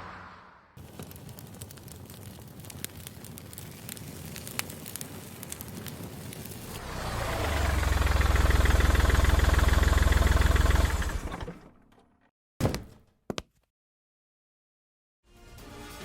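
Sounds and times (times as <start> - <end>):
vehicle engine running: 6.8 - 11.8.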